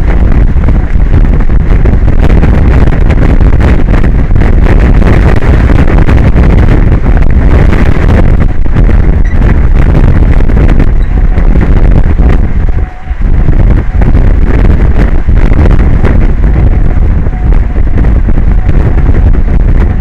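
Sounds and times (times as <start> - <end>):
wind buffeting microphone: 0.0 - 20.0.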